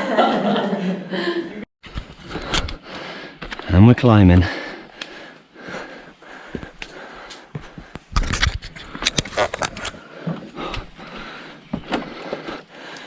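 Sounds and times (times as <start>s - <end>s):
climbing scuffs and scrapes: 5.8s - 12.8s.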